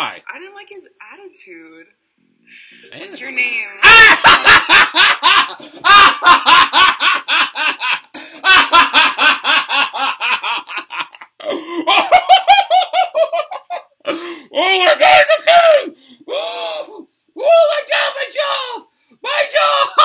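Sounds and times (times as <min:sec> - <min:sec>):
man laughing hard: 0:03.8 - 0:14.0.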